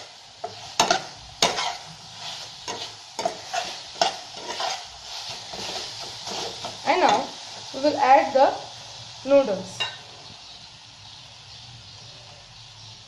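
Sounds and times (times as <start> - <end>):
vegetables sizzling in a pan: 0.0 - 13.0
utensil scraping a pan: 0.4 - 7.3.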